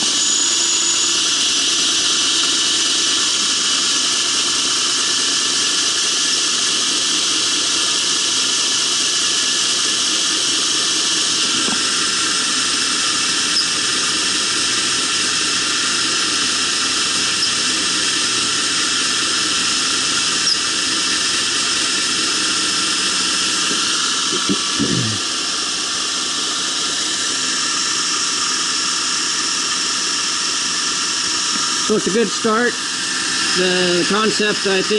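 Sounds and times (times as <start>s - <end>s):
belt grinder whining: 0.0s - 34.9s.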